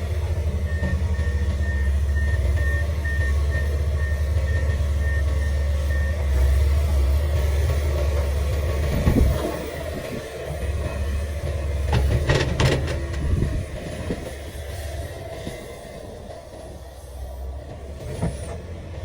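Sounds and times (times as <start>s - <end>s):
excavator diesel engine rumbling: 0.0s - 19.0s
metallic clanks and knocks: 11.8s - 13.6s.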